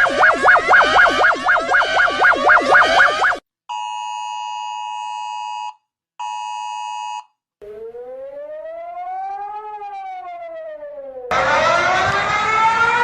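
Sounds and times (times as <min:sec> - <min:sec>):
emergency alert tones: 0:00.0 - 0:03.4, 0:07.6 - 0:13.0
siren rising in pitch: 0:00.0 - 0:03.4, 0:07.6 - 0:13.0.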